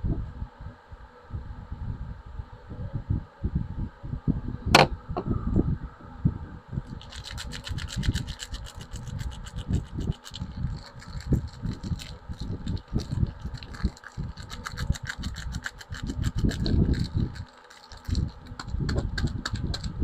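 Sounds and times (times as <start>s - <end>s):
soft knocks of handling bars: 4.8s - 5.0s
packaging crinkling: 7.0s - 18.7s.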